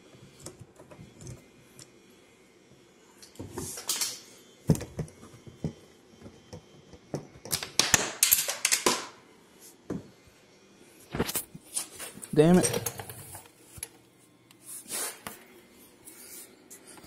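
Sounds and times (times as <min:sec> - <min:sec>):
parts clattering and scraping: 0:11.2 - 0:13.9.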